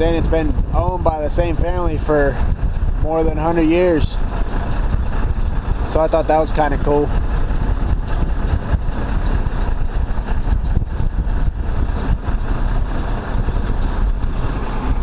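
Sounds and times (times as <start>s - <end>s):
vehicle engine idling: 0.0s - 15.0s.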